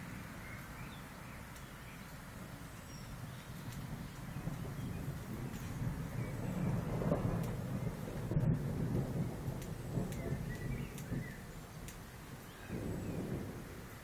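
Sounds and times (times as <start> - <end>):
rolling thunder: 3.2 - 14.0.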